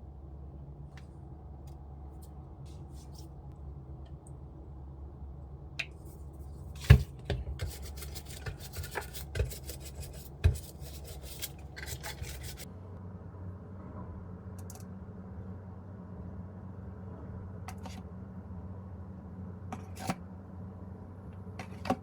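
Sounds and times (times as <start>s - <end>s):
low steady hum: 0.0s - 22.0s
scraping and crackling pastry: 6.0s - 12.7s.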